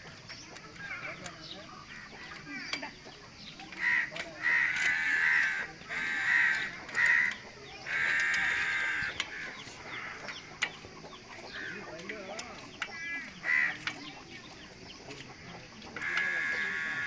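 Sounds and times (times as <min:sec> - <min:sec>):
crow cawing: 0:03.8 - 0:10.6, 0:12.9 - 0:14.0, 0:16.0 - 0:17.0.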